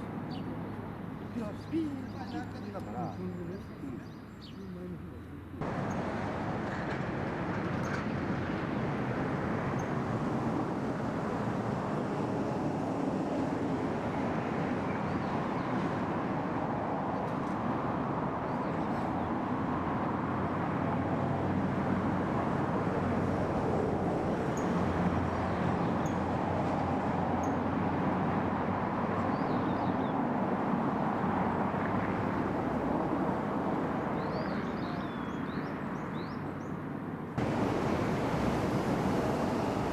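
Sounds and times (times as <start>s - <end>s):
distant outdoor rumble: 0.0s - 16.1s, 37.4s - 39.9s.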